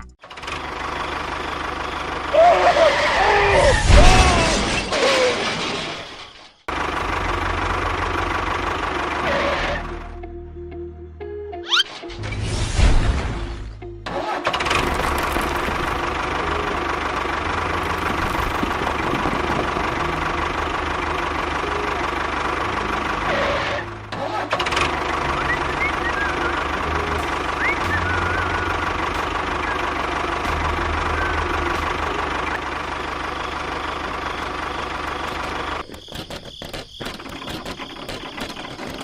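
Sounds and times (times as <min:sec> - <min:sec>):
small engine knocking: 0:14.6 - 0:39.0.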